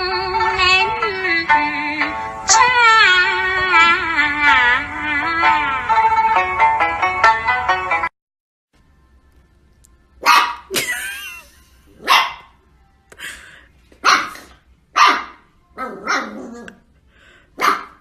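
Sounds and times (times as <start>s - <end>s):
dog barking: 10.2s - 10.8s, 12.0s - 12.6s, 14.0s - 16.6s, 17.6s - 18.0s.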